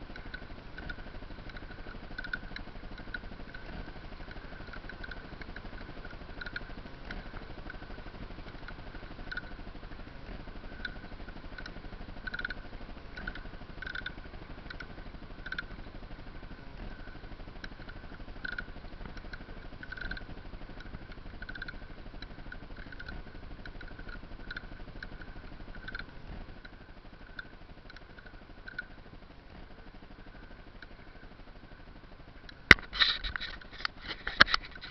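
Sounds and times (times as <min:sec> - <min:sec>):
kayak pedal squeaking: 0:00.2 - 0:26.1.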